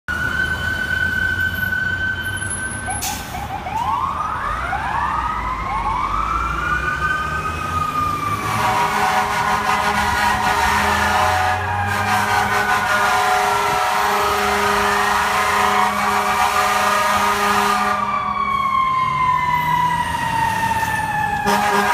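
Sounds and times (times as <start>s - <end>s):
engines rumbling: 0.1s - 21.9s
fire engine siren: 0.1s - 21.9s
traffic: 0.1s - 21.9s
air horn blast: 8.5s - 18.1s, 21.4s - 21.9s.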